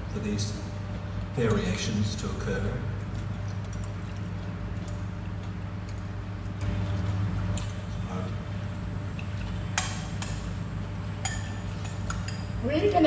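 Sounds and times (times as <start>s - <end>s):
steady low hum: 0.0s - 13.0s
dishes clinking: 9.2s - 10.6s, 11.2s - 12.6s.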